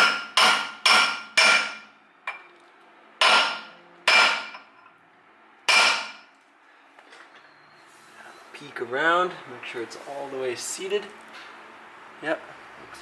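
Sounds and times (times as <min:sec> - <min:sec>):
hammer striking metal: 0:00.0 - 0:02.5, 0:03.2 - 0:04.7, 0:05.7 - 0:06.3.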